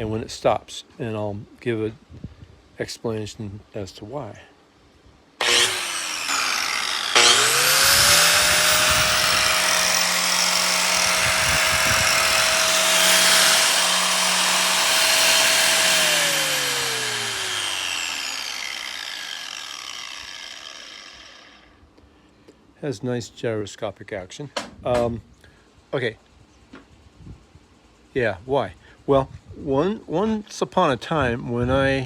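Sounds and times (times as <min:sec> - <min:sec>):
angle grinder whining: 0:05.4 - 0:21.7.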